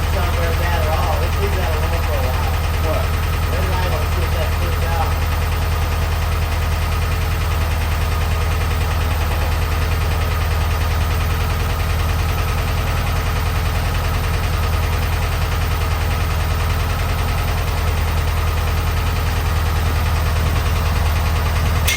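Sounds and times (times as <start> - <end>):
engine idling: 0.0 - 21.9
person talking: 0.1 - 5.2.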